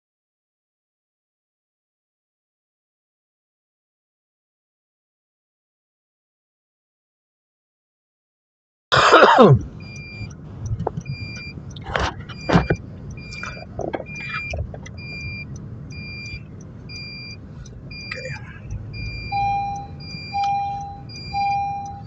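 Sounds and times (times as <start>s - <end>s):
vehicle cabin rumble: 9.0s - 22.0s
two-tone electronic beeps: 9.6s - 22.0s
knocks and rustles: 11.8s - 12.8s, 13.5s - 15.0s.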